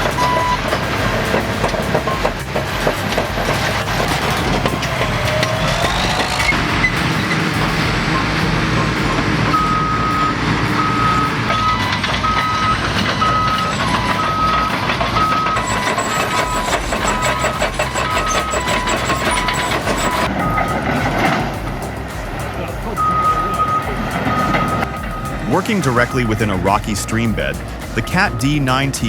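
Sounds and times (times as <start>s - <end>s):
heavy earthmoving machine running: 0.0s - 29.0s
two-tone reversing alarm beeping: 0.0s - 29.0s.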